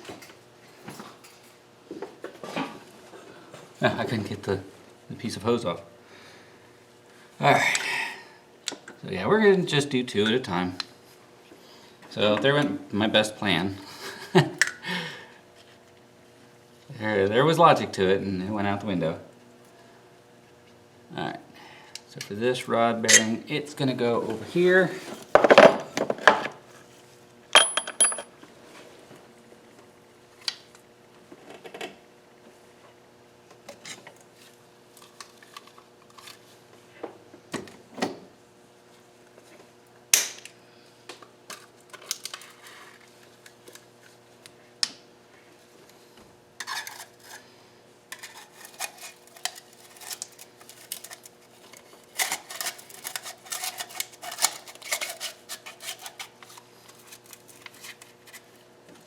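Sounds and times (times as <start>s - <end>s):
light metallic clinks and taps: 27.6s - 28.3s.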